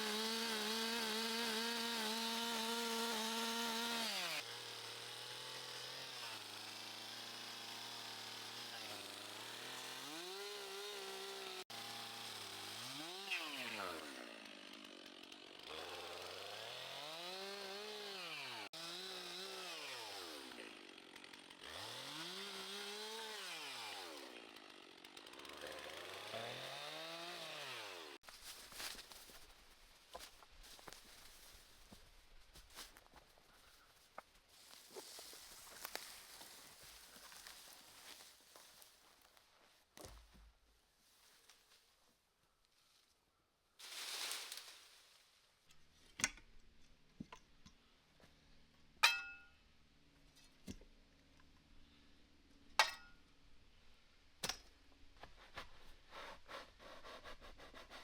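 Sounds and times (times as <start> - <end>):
small two-stroke engine revving: 7.0 - 14.7.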